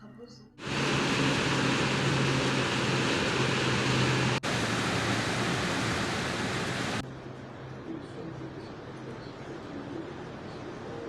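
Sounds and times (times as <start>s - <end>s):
heavy rain pouring: 0.6s - 7.0s.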